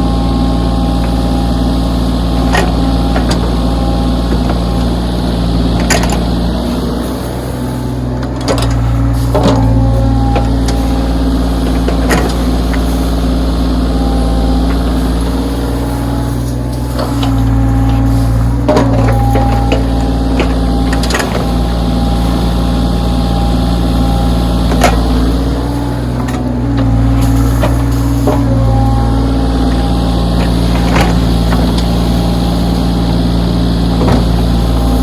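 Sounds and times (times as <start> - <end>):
diesel engine under load: 0.0 - 35.0.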